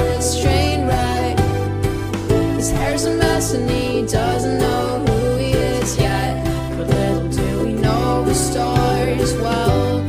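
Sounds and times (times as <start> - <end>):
song with singing voice: 0.0 - 10.0.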